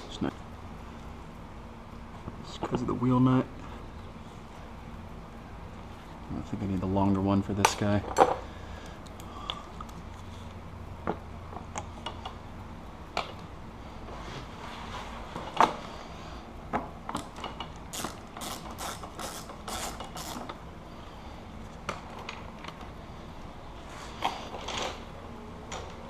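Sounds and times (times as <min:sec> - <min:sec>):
ratchet-like rasping strokes: 0:17.9 - 0:20.6.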